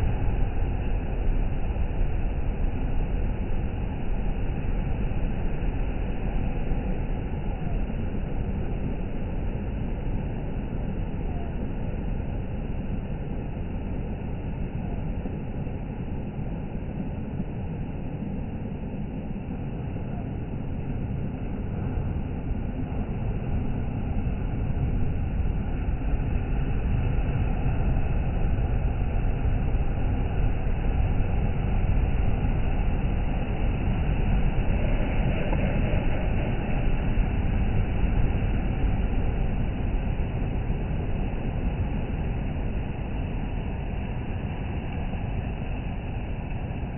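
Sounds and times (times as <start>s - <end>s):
sea surf washing on shore: 20.9s - 46.9s.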